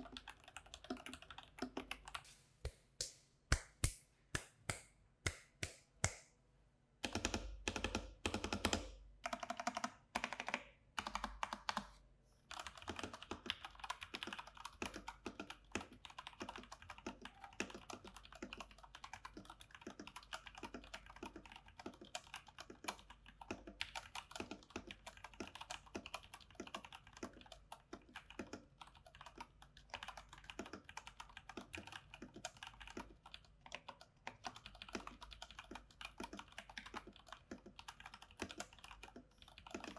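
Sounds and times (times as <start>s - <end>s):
mechanical keyboard typing: 0.0s - 2.2s, 7.0s - 11.9s, 12.5s - 39.9s.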